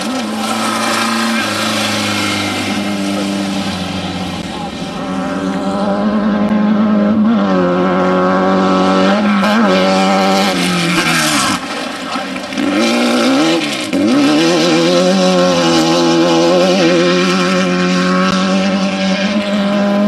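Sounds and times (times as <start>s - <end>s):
rushing noise: 0.0s - 6.0s
race vehicle engine revving: 0.0s - 20.0s.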